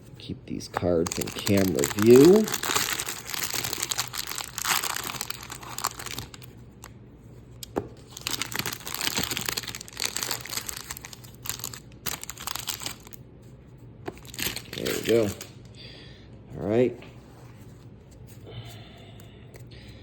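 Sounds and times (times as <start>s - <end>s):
plastic wrapper crinkling and tearing: 0.8s - 6.9s, 7.6s - 13.2s, 14.1s - 15.6s.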